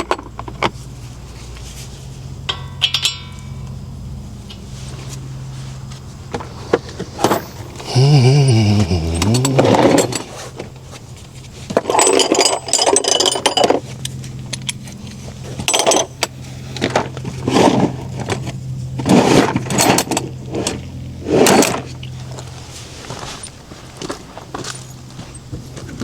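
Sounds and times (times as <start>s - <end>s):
metal tools clinking and scraping: 7.0s - 10.6s, 11.7s - 13.9s.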